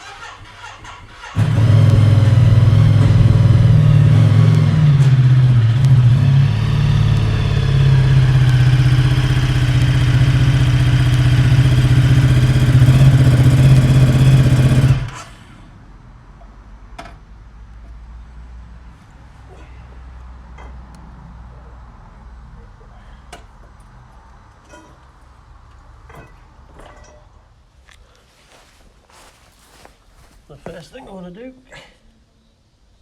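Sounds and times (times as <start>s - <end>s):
motorcycle engine running: 1.3s - 15.4s.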